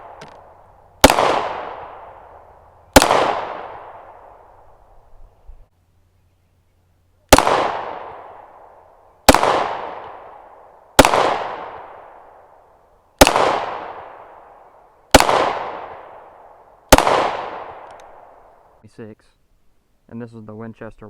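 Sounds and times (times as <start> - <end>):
pistol shots with echo: 0.0 - 4.3, 7.3 - 12.3, 13.2 - 18.4.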